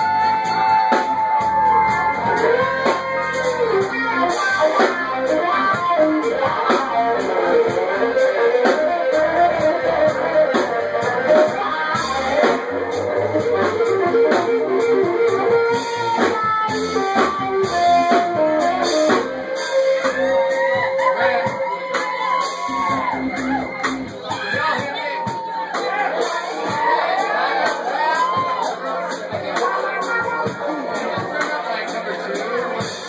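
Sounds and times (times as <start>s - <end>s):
electric guitar: 0.0s - 26.3s
drums: 0.0s - 33.0s
live band playing: 0.0s - 33.0s.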